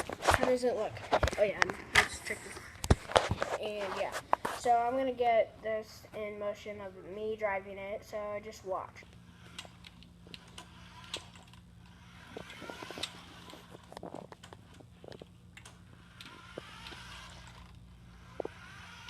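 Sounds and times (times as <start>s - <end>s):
toy car electric motor whirring: 8.2s - 19.0s.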